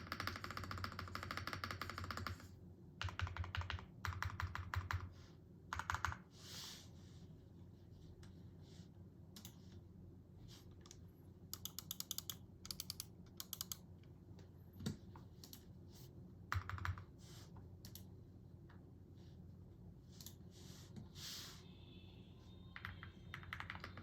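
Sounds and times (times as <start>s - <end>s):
mechanical keyboard typing: 0.0s - 5.1s, 5.7s - 6.2s, 11.5s - 13.9s, 16.5s - 17.1s, 22.8s - 24.0s.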